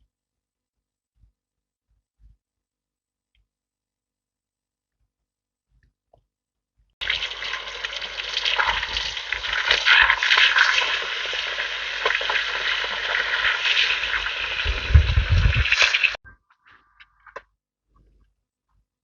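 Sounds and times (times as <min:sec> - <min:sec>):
food sizzling in hot oil: 0:07.0 - 0:16.2.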